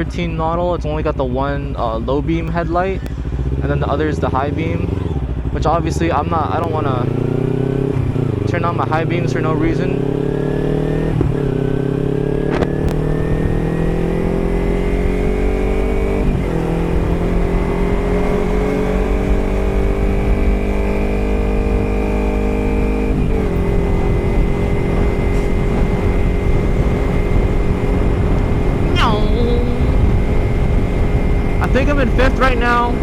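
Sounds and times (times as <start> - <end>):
motorcycle engine pulling: 1.2 - 33.0
wind rumble: 23.1 - 33.0.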